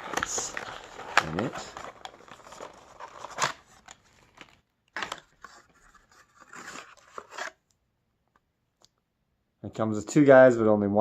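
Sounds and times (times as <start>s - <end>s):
packaging rustling and scraping: 0.0s - 7.6s.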